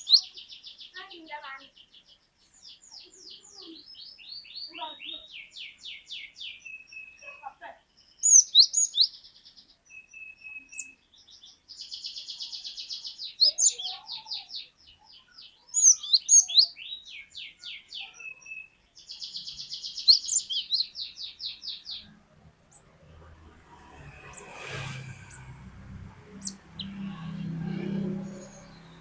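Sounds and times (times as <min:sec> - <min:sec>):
bird trilling: 0:15.7 - 0:22.1.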